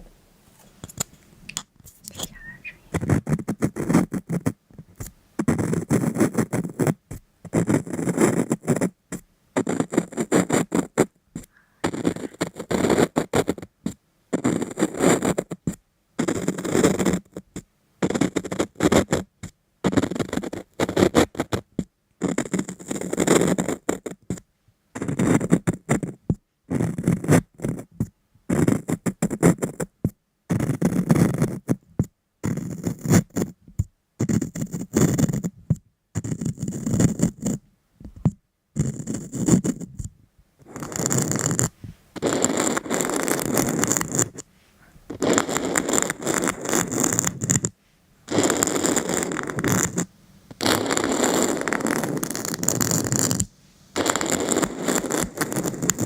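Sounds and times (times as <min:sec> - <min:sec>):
scraping and scratching: 0:40.6 - 0:47.7.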